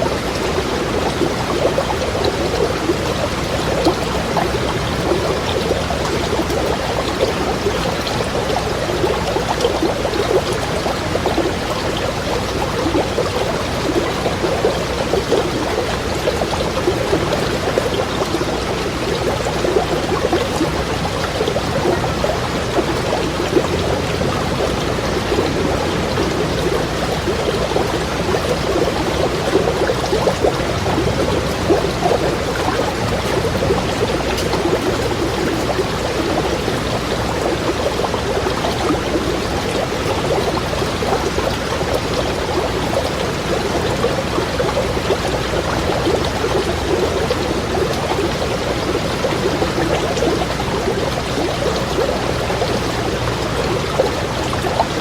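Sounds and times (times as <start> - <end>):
stream babbling over stones: 0.0 - 55.0.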